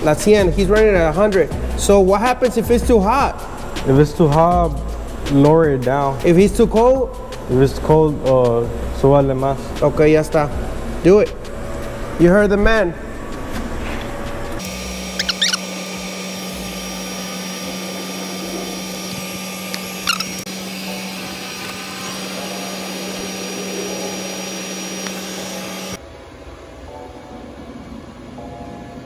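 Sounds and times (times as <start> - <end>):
welding arc hissing and humming: 13.1 - 26.0.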